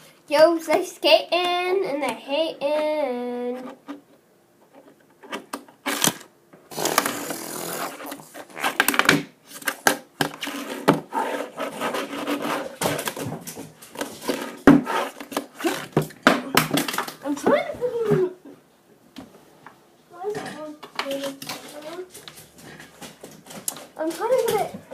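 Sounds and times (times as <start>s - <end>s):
fingerboard rolling or scraping: 10.4s - 13.1s, 14.1s - 16.0s.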